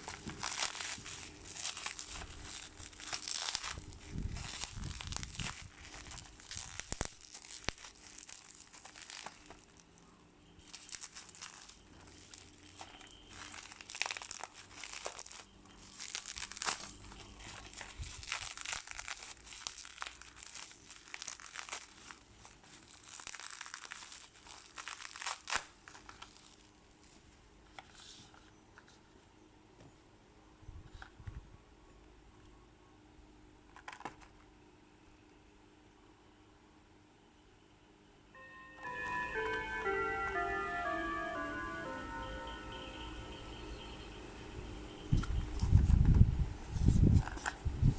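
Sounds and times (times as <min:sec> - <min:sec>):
packaging crinkling: 0:00.0 - 0:28.4, 0:33.7 - 0:34.4.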